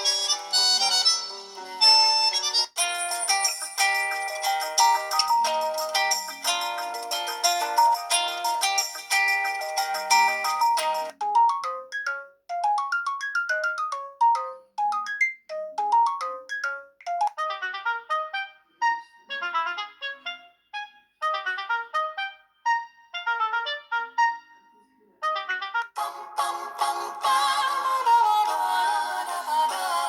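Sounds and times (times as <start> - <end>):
phone ringtone melody: 0.0 - 19.4.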